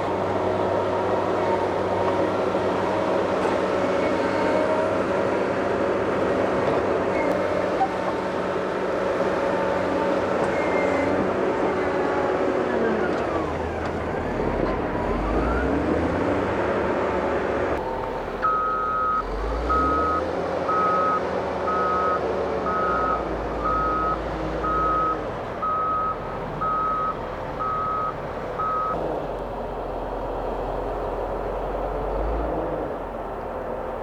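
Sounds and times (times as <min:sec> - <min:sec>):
diesel engine under load: 0:00.0 - 0:34.0
reverse alarm beeping: 0:18.4 - 0:29.0.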